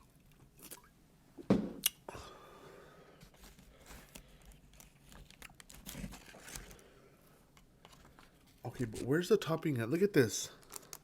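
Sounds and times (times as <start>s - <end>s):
food and paper wrapping crinkling: 3.3s - 6.9s, 10.5s - 11.0s.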